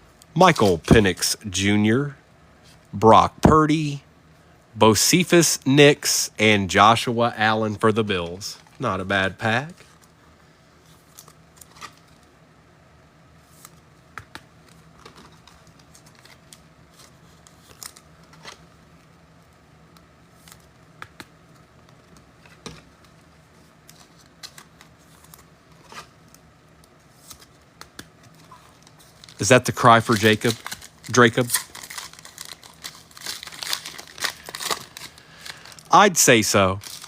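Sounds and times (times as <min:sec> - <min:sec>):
low steady hum: 0:00.0 - 0:37.0
trading cards being handled: 0:00.3 - 0:01.4, 0:19.9 - 0:37.0.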